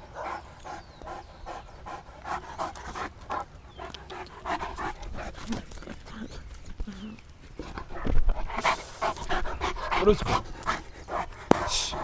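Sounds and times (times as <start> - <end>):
dog panting fast: 0.0 - 5.6, 7.6 - 12.0.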